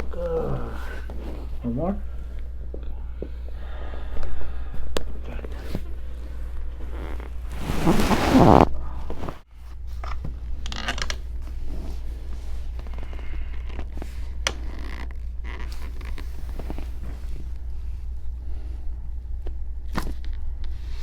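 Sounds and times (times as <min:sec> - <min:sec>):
low steady hum: 0:00.0 - 0:21.0
clothing rustling on table: 0:05.5 - 0:10.0.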